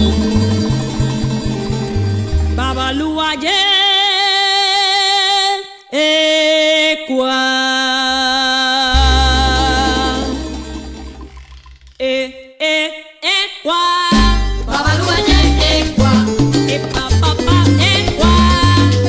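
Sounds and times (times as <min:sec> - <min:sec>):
plucked bass line: 0:00.0 - 0:03.4, 0:09.0 - 0:12.0, 0:14.2 - 0:19.0
women singing with vibrato: 0:02.6 - 0:10.7, 0:12.0 - 0:19.0.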